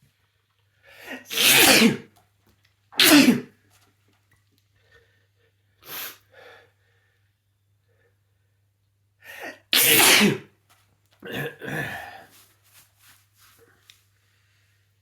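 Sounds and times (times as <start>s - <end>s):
person sneezing: 1.0s - 2.1s, 3.0s - 3.5s, 9.4s - 10.5s.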